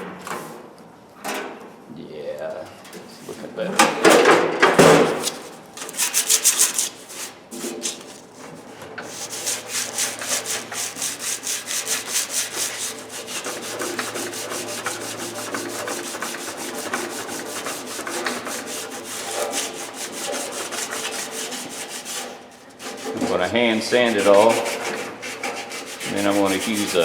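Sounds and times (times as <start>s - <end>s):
sandpaper rubbing on steel: 5.2s - 8.2s, 9.1s - 27.0s.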